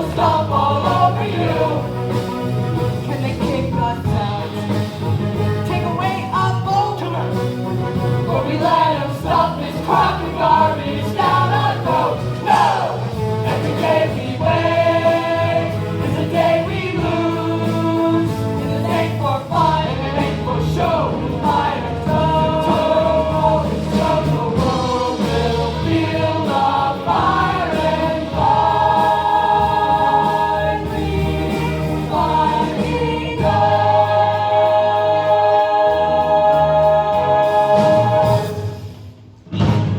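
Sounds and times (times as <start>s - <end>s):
choir singing with instruments: 0.0s - 39.9s.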